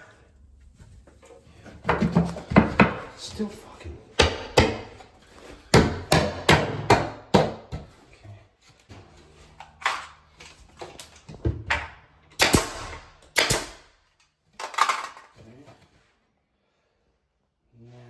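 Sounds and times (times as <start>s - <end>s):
hammer striking wood: 1.8s - 3.2s, 4.2s - 5.1s, 5.7s - 8.0s, 12.4s - 13.8s.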